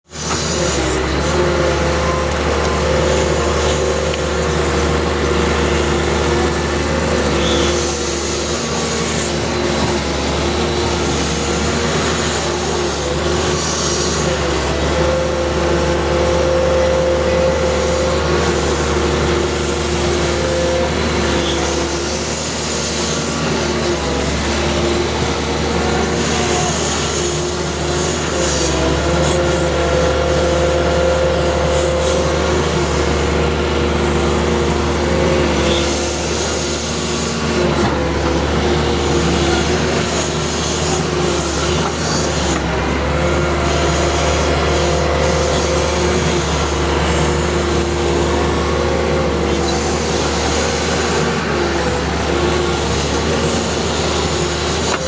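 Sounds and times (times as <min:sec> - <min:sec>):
heavy diesel engine running: 0:00.0 - 0:55.0.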